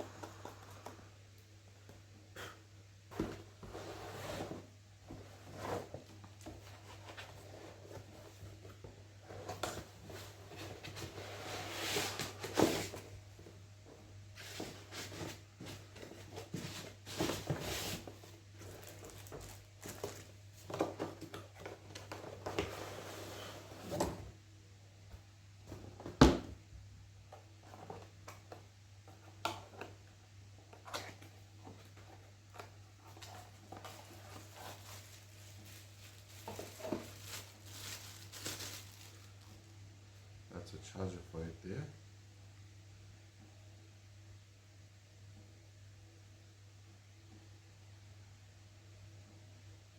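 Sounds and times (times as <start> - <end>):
cardboard packaging rustling: 14.4 - 24.2, 30.7 - 39.7.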